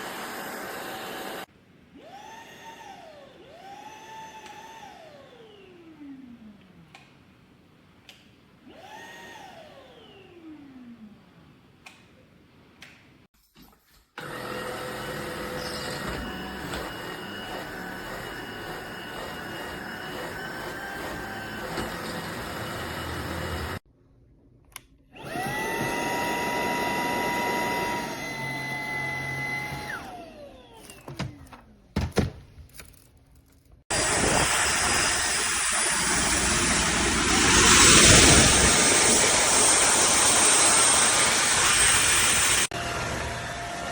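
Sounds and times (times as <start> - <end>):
stick vacuum motor whine: 14.2 - 23.8, 25.2 - 31.6, 33.9 - 43.9.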